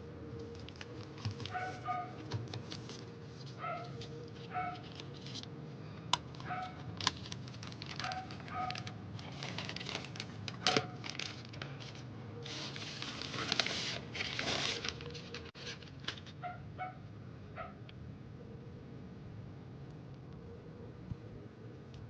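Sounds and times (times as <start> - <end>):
packaging rustling: 0.4 - 5.5, 6.2 - 16.4.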